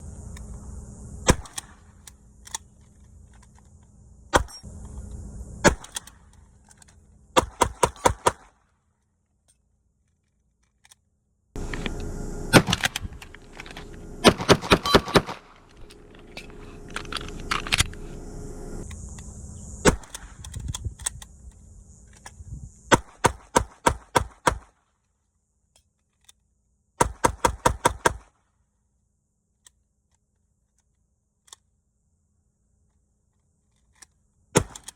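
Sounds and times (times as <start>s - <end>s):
gunshots: 1.3s - 1.8s, 5.6s - 6.0s, 7.4s - 8.6s, 12.5s - 15.7s.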